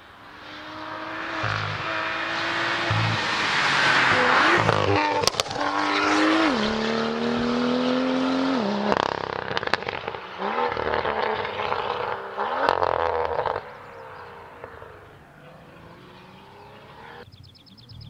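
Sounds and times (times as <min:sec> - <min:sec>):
loud car engine revving: 0:00.3 - 0:17.2
exhaust pops and crackles: 0:04.2 - 0:06.0, 0:08.8 - 0:13.6.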